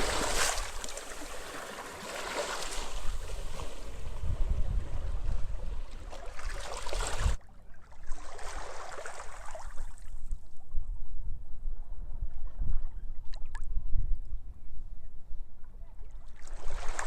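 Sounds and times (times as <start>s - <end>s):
wind buffeting microphone: 0.0s - 1.2s, 2.8s - 7.4s
sea waves washing ashore: 0.0s - 7.4s.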